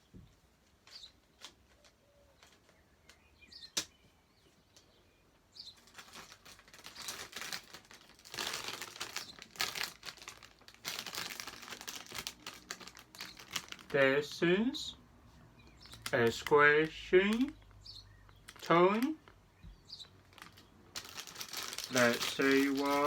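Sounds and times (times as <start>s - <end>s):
plastic crinkling and rustling: 5.6s - 14.0s, 15.6s - 16.5s, 17.3s - 23.0s.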